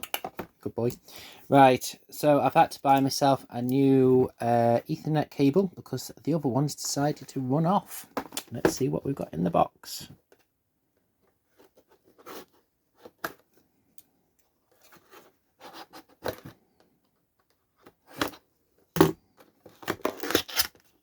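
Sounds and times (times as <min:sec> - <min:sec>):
cardboard box tearing and rustling: 0:19.8 - 0:20.8.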